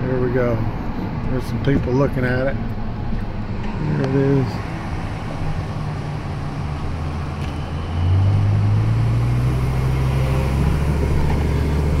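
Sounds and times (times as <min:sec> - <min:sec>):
vehicle engine accelerating: 0:03.0 - 0:12.0.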